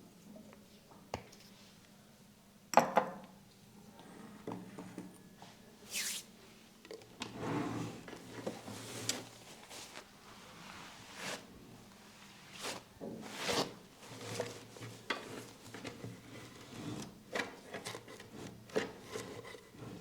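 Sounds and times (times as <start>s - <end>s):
hands rubbing hair and skin: 5.9s - 6.3s.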